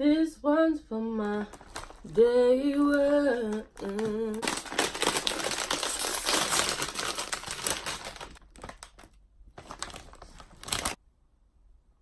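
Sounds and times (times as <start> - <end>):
plastic chip bag crinkling: 1.4 - 11.0.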